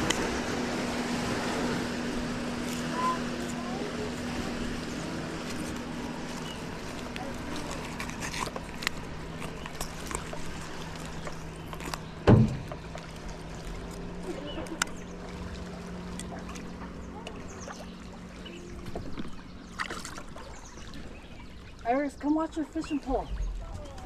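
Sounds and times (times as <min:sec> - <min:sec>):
low motor hum: 0:00.0 - 0:24.0
loud knock: 0:12.3 - 0:12.7.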